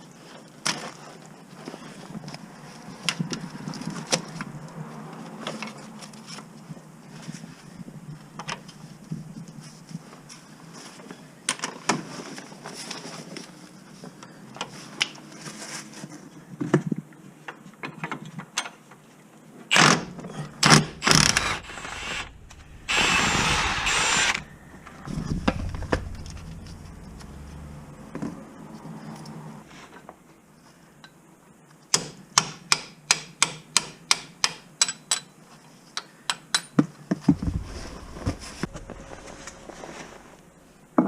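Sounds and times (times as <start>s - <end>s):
loud rush of air: 20.5s - 29.7s, 37.4s - 41.0s.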